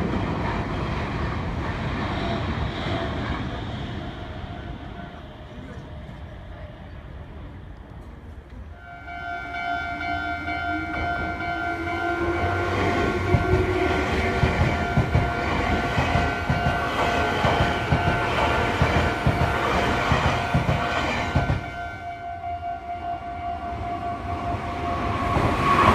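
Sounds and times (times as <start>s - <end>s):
electric train passing: 0.0s - 25.9s
level-crossing warning bell: 8.8s - 25.9s.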